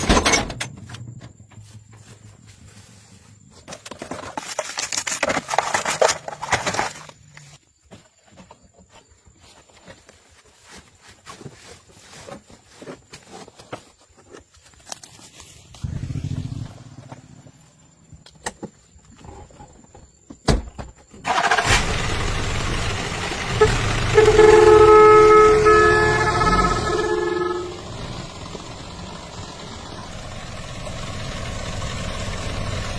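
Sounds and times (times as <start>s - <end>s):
vehicle engine running: 0.6s - 3.5s, 15.8s - 18.2s, 21.3s - 32.9s
horn blasts: 23.3s - 29.3s.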